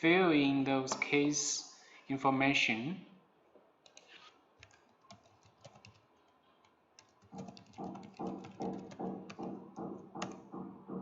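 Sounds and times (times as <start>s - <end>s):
keyboard typing: 3.8s - 11.0s.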